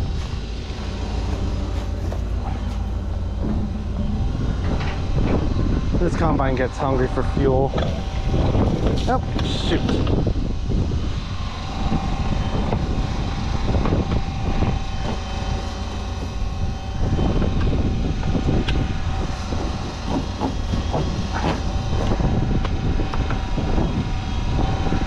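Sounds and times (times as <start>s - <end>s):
machine running with whine: 0.0s - 25.0s
clanks and knocks: 0.1s - 6.9s, 13.7s - 23.5s.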